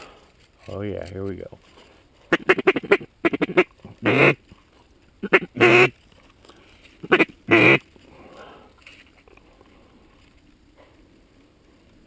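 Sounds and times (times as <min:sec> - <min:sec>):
duck call raspy quacks: 0:02.3 - 0:04.4, 0:05.2 - 0:06.0, 0:07.0 - 0:07.8.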